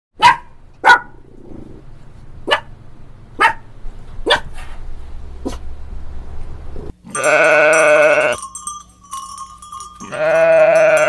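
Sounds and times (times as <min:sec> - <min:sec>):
dog barking: 0:00.2 - 0:01.2, 0:02.4 - 0:02.8, 0:03.4 - 0:04.8, 0:05.4 - 0:05.6.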